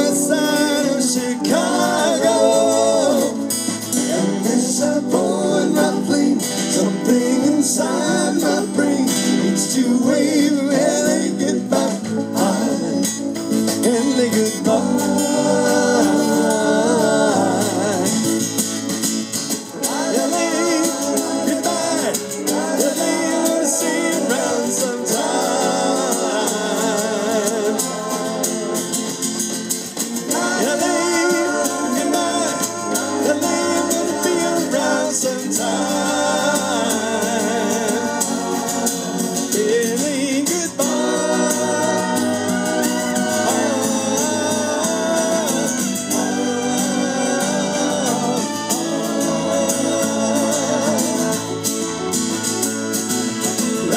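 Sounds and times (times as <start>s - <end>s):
guitar: 0.0s - 53.9s
voices singing in harmony: 0.0s - 53.9s
rhythm section: 14.6s - 53.9s.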